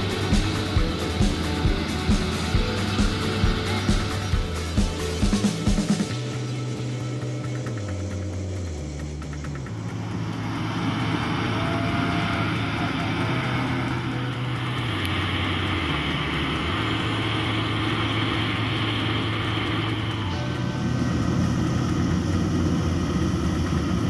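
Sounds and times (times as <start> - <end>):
background music with bass line: 0.0 - 24.0
combine harvester running: 0.0 - 24.0.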